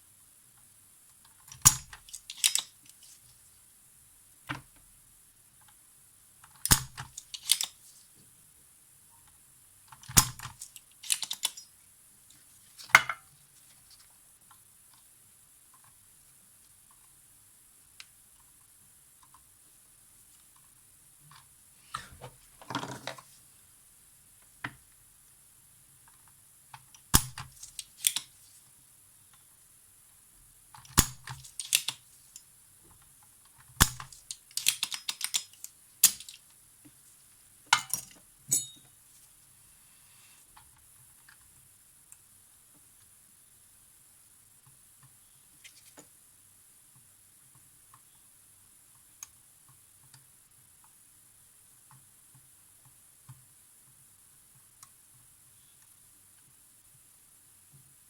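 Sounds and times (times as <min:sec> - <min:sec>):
tools clicking on hard surface: 0:33.8 - 0:36.4, 0:37.8 - 0:38.9.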